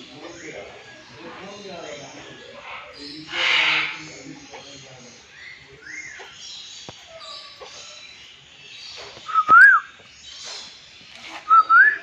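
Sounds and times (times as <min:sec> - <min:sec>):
faint calls of other birds: 0:00.0 - 0:12.0
bird whistling loud call: 0:09.2 - 0:09.9, 0:11.3 - 0:12.0.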